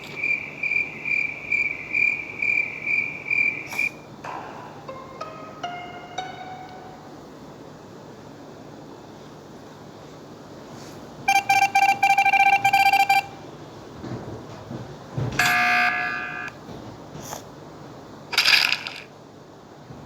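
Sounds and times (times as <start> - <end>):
electronic beeps: 11.3 - 13.4, 15.4 - 16.5.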